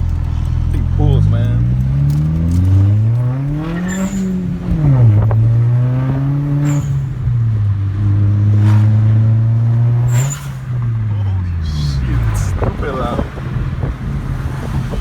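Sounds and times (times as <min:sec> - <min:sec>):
car engine accelerating hard: 0:00.0 - 0:15.0.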